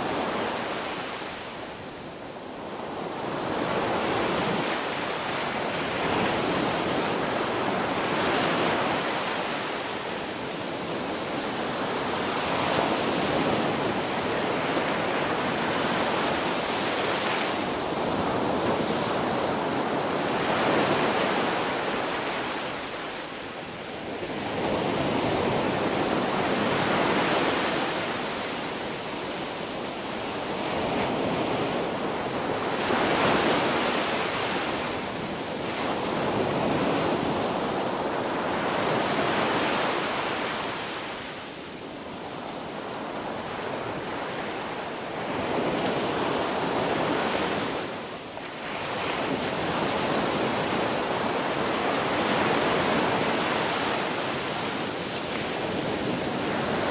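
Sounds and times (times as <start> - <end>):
ocean surf breaking on beach: 0.0 - 56.9.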